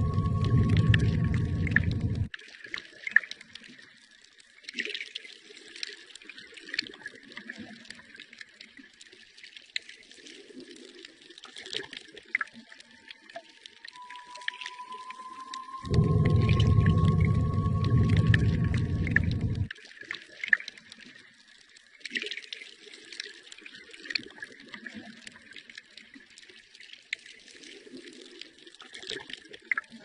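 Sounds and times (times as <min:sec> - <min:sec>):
loud low sound: 0:00.0 - 0:02.3, 0:14.0 - 0:19.7
steady high tone: 0:00.0 - 0:02.3, 0:13.9 - 0:19.7
water bubbling and trickling: 0:00.0 - 0:29.8.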